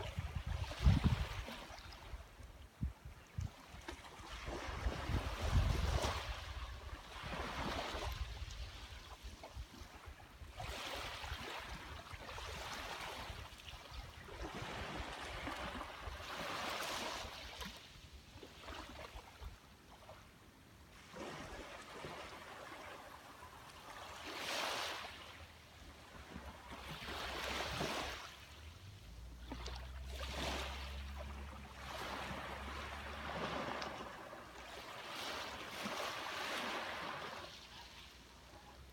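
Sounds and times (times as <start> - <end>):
sea waves breaking on beach: 3.7 - 19.4, 20.9 - 38.9.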